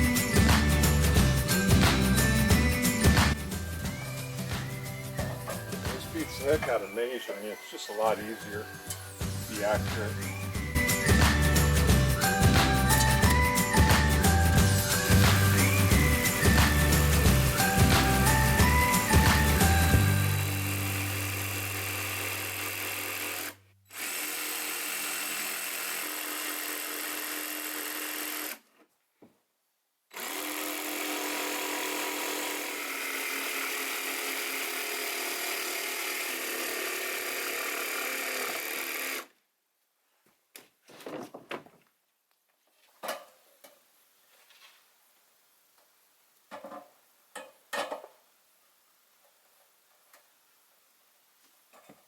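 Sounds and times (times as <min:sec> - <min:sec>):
power tool cutting wood: 0:00.0 - 0:28.6, 0:30.1 - 0:39.3.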